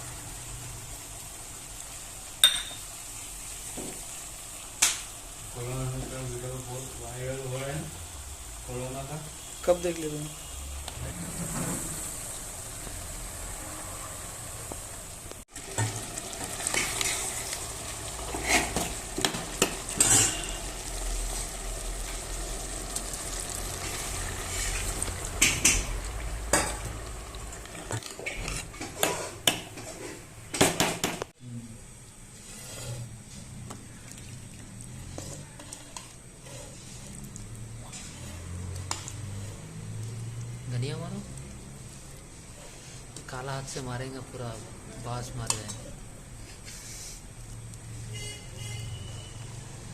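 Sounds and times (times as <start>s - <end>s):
vegetables sizzling in a pan: 0.0s - 30.6s, 31.8s - 48.2s
spoon clinking and scraping pan: 2.4s - 2.9s, 18.3s - 20.6s.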